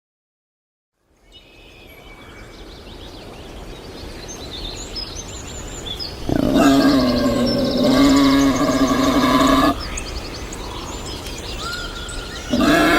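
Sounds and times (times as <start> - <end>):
birds chirping: 3.8 - 12.9.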